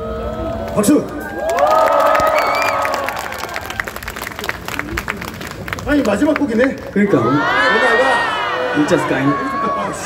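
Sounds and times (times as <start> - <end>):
crowd cheering and shouting: 0.0 - 3.8, 7.0 - 10.0
people clapping: 0.6 - 7.2.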